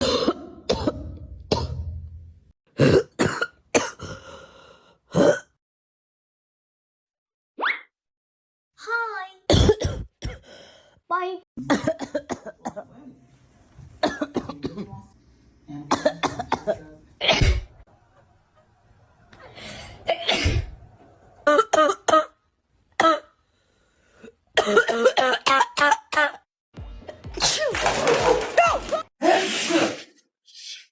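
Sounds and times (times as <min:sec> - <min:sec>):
person coughing: 0:00.0 - 0:01.8, 0:02.8 - 0:04.2, 0:09.5 - 0:10.4, 0:11.6 - 0:12.8, 0:14.0 - 0:14.9, 0:15.9 - 0:17.7, 0:24.6 - 0:26.4.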